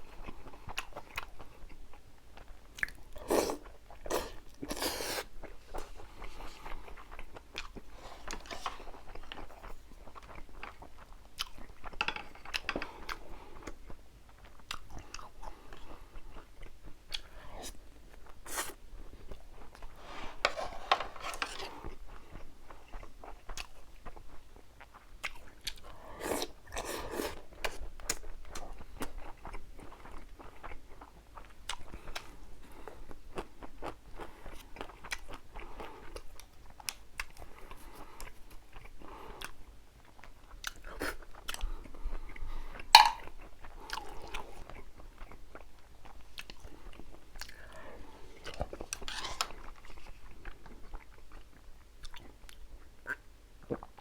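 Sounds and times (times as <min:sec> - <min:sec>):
wet mouth clicks: 0:43.0 - 0:43.2.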